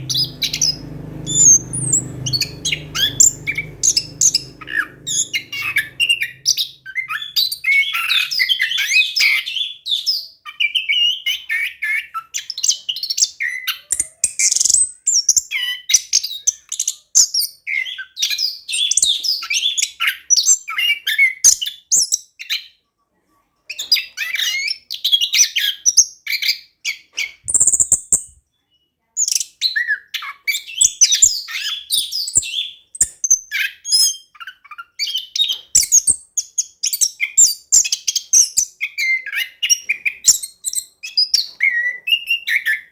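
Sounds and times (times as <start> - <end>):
thrush singing chirps and whistles: 0.0 - 9.8.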